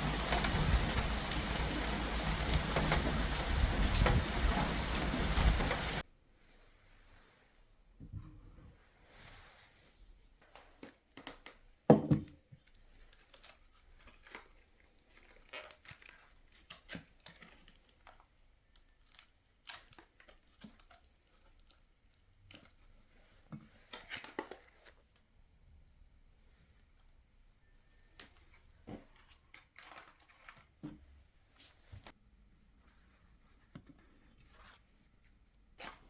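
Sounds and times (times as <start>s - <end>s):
crinkling and rustling: 0.0s - 6.0s, 12.4s - 25.4s, 27.8s - 36.0s.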